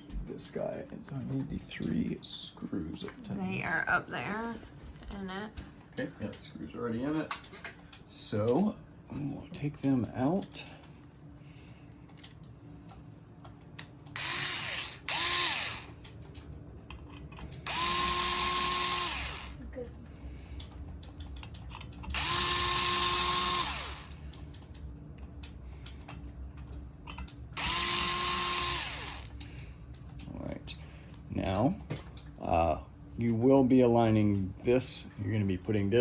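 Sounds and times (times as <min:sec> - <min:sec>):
electric screwdriver whine: 0:14.2 - 0:16.0, 0:17.6 - 0:19.6, 0:22.1 - 0:24.2, 0:27.6 - 0:29.4.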